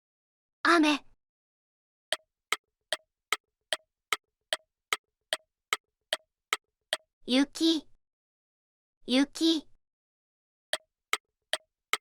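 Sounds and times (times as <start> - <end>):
electronic timer ticks: 2.1 - 7.1, 10.8 - 12.0.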